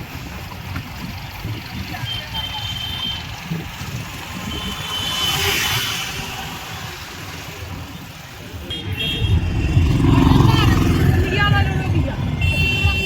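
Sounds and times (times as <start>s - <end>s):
motorcycle engine passing: 9.2s - 13.0s.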